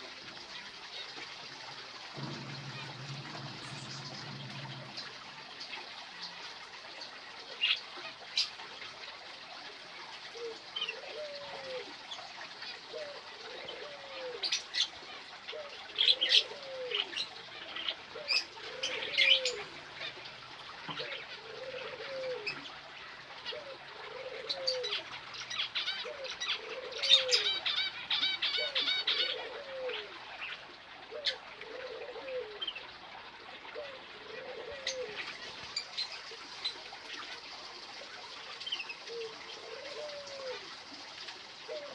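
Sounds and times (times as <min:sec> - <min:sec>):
dove cooing: 0:02.2 - 0:05.3, 0:10.3 - 0:12.0, 0:12.9 - 0:14.6, 0:15.5 - 0:17.2, 0:18.1 - 0:20.2, 0:20.9 - 0:22.6, 0:23.5 - 0:25.0, 0:26.0 - 0:27.6, 0:28.5 - 0:30.2, 0:31.1 - 0:32.6, 0:33.7 - 0:35.4, 0:39.0 - 0:40.8, 0:41.6 - 0:41.9
small birds chirping: 0:02.2 - 0:06.4.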